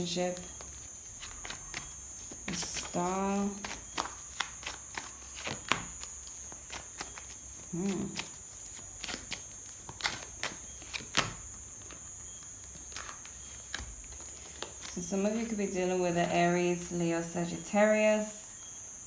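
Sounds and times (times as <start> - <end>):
cards clicking and sliding on table: 0.4 - 12.0
person murmuring: 7.7 - 8.2.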